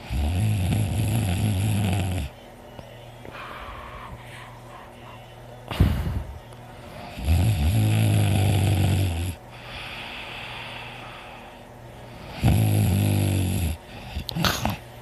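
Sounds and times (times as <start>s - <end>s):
man snoring heavily: 0.0s - 2.3s, 7.1s - 10.6s, 12.2s - 14.4s.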